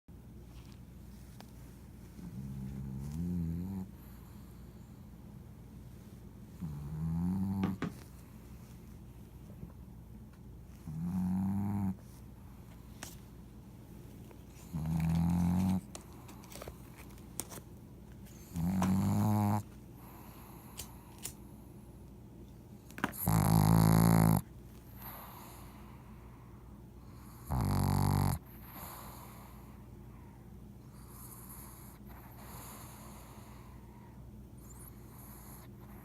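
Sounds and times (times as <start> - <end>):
dog snoring loudly: 2.4 - 3.9, 6.6 - 7.8, 10.9 - 12.0, 14.7 - 15.8, 18.5 - 19.6, 23.2 - 24.4, 27.2 - 29.6.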